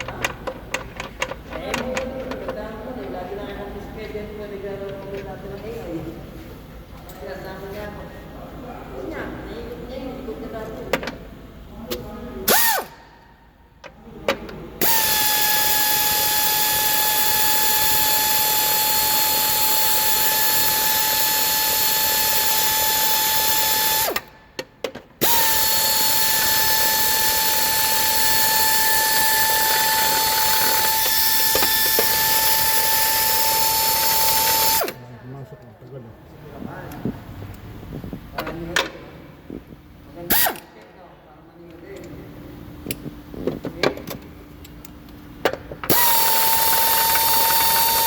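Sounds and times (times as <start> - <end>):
power tool high whine: 12.5 - 13.0, 14.8 - 24.3, 25.2 - 35.0, 45.9 - 48.0.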